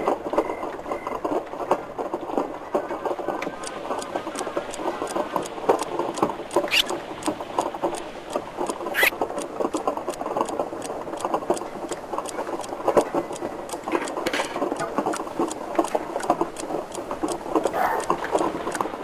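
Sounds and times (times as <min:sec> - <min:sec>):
mechanical clicking and rattling: 0:03.2 - 0:19.0
high squeak: 0:06.7 - 0:06.9.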